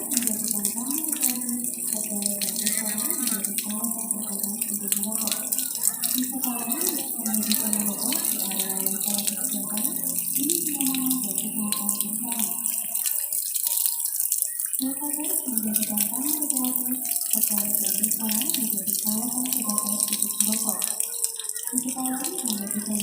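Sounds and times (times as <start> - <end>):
wavering voice-like sound: 0.0 - 13.3
rushing water: 0.0 - 23.0.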